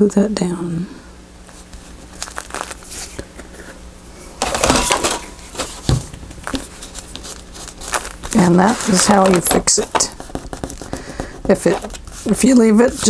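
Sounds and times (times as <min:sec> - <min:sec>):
paper rustling and crinkling: 0:01.5 - 0:03.8, 0:04.4 - 0:13.0
dull thump: 0:05.8 - 0:06.7.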